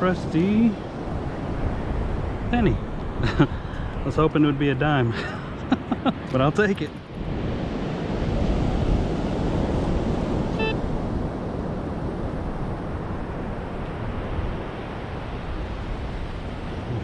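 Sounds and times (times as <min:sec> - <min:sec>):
wind buffeting microphone: 0:00.0 - 0:04.6, 0:06.1 - 0:17.0
beach surf: 0:00.0 - 0:17.0
metal detector beep: 0:10.6 - 0:10.8.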